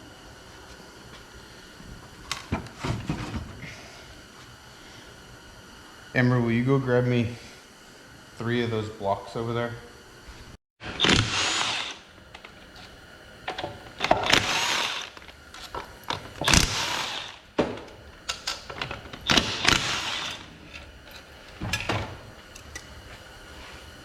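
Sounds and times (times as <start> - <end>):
power tool bursts: 10.8 - 12.2, 13.5 - 15.4, 16.1 - 20.8.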